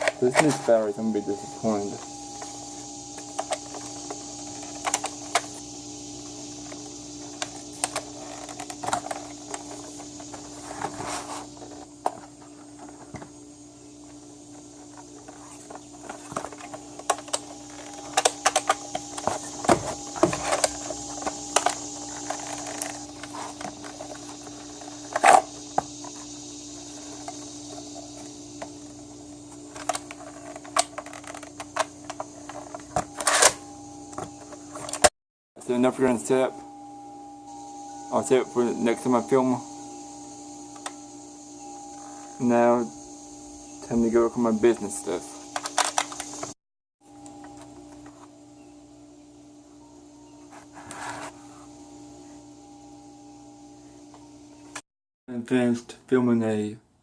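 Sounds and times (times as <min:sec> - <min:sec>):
steady hum: 0:00.0 - 0:54.8
plastic parts clicking and rattling: 0:45.6 - 0:46.5.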